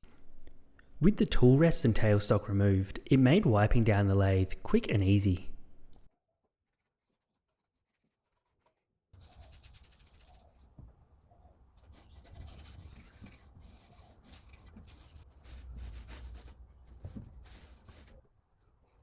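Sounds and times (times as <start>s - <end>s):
cloth rubbing on lathe: 9.2s - 10.8s, 11.8s - 18.2s.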